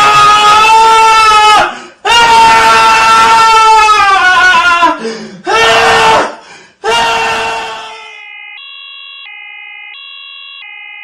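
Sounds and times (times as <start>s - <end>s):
high voice crying out: 2.1s - 8.2s.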